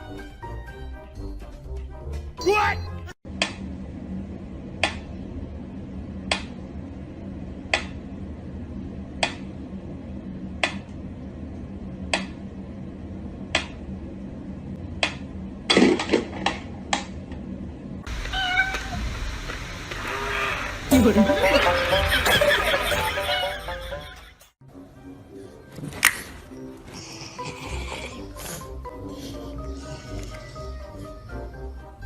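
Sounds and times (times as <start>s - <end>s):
low steady hum: 3.3s - 20.1s.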